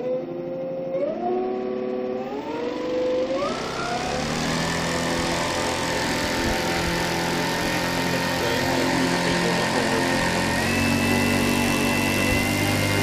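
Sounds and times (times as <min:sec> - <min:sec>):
electric motor whine: 0:00.0 - 0:13.0
propeller rush: 0:02.6 - 0:13.0.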